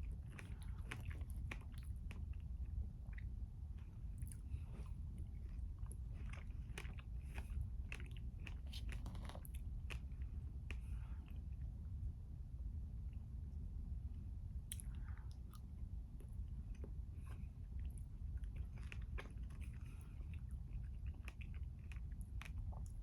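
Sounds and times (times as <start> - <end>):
person chewing: 0.3 - 2.5, 4.2 - 10.9, 16.7 - 23.0.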